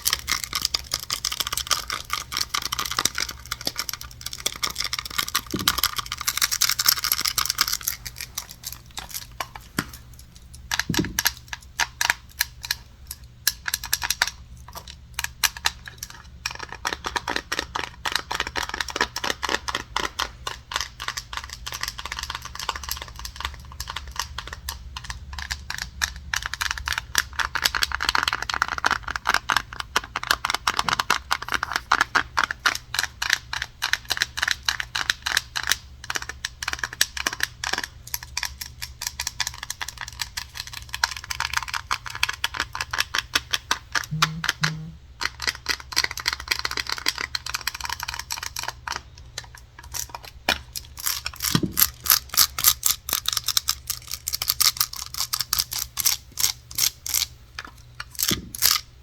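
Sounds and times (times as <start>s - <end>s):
fast tapping on wood: 0.0s - 8.7s, 10.7s - 12.8s, 41.4s - 48.5s, 58.2s - 58.7s.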